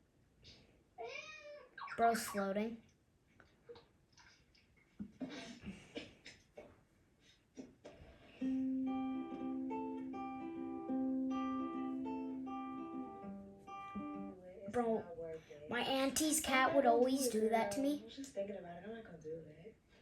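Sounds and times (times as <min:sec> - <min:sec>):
plucked string melody: 0:08.4 - 0:14.4.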